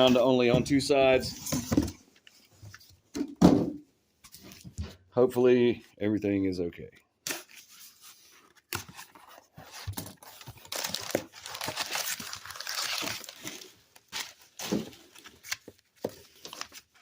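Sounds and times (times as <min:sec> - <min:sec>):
paper and cardboard crinkling: 0:07.3 - 0:17.0.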